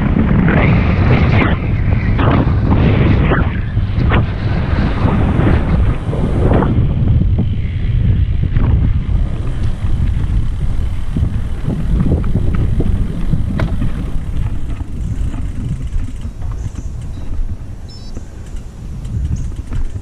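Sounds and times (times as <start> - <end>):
bike tyres rolling on pavement: 0.0 - 20.0
wind rumbling over microphone: 0.0 - 20.0.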